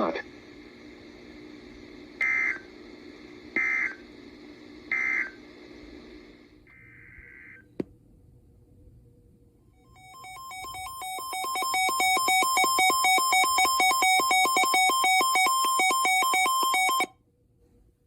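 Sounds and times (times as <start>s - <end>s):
two-pitch warbling alarm beep: 9.9s - 17.1s.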